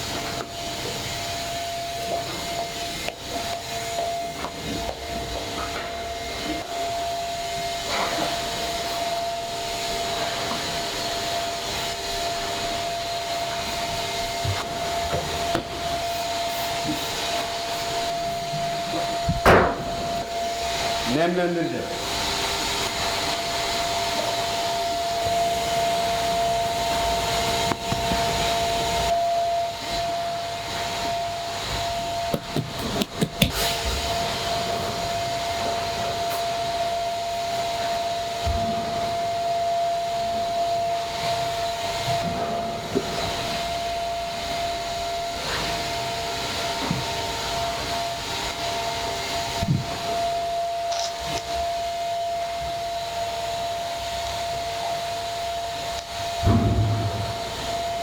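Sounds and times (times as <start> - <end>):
factory machinery whirring: 55.4 - 58.0
high hum: 56.2 - 58.0.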